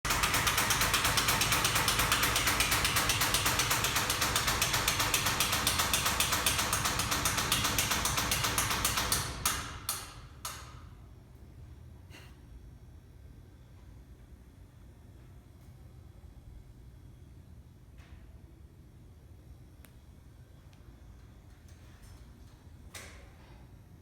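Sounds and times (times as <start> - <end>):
water pump clattering clicks: 0.1 - 10.8.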